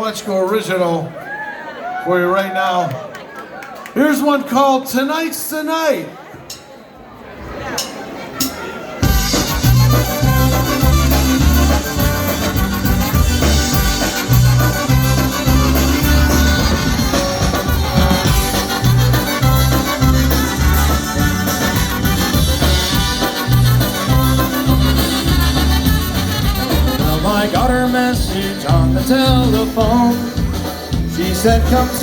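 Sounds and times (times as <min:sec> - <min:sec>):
polka band playing: 0:07.8 - 0:32.0
repeating bass line: 0:09.0 - 0:32.0.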